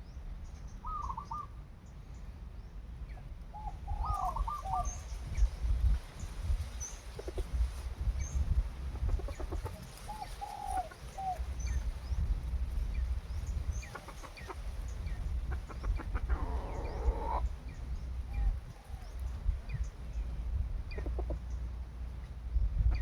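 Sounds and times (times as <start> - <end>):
small birds chirping: 0.0 - 22.3
junglefowl clucking: 3.6 - 5.1, 7.1 - 7.6, 8.8 - 11.9, 13.7 - 19.3, 20.9 - 21.7.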